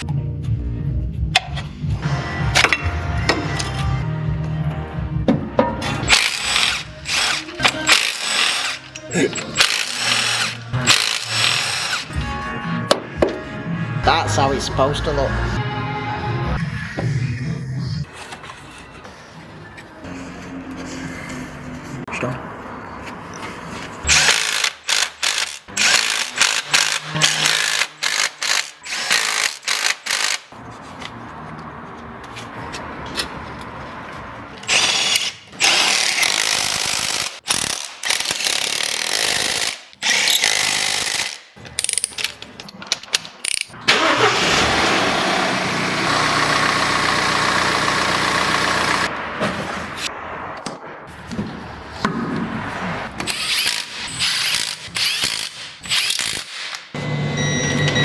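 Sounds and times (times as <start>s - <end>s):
sharp mechanical bursts and clatters: 6.1s - 8.9s, 9.6s - 12.1s, 24.1s - 30.5s, 34.6s - 42.1s, 45.9s - 49.1s, 53.3s - 57.0s
steady mechanical noise: 43.4s - 52.5s.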